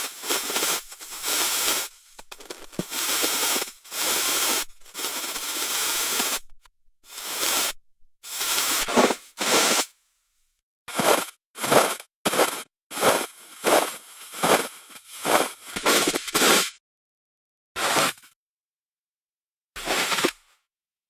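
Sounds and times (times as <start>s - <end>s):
hissing snow rushes: 0.0s - 9.9s.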